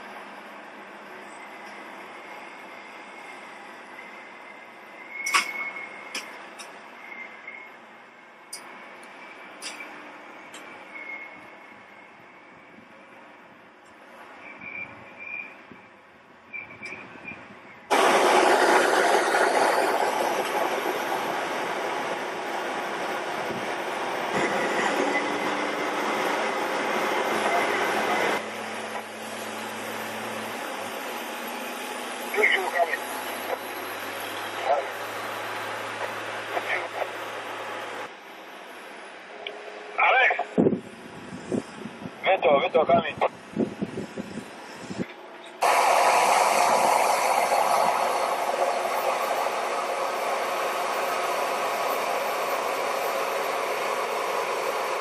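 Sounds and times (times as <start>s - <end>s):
machinery noise with high whine: 14.3s - 55.0s.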